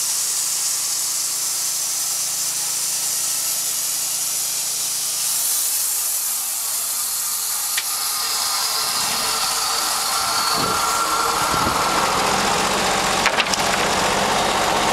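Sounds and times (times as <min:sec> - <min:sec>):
sawmill hiss: 0:00.0 - 0:14.9
low engine drone: 0:05.1 - 0:14.9.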